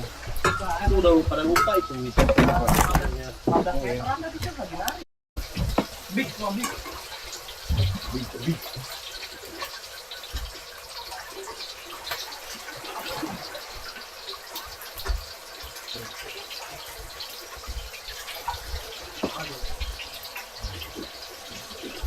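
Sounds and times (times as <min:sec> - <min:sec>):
water splashing and sloshing: 0:05.4 - 0:22.0.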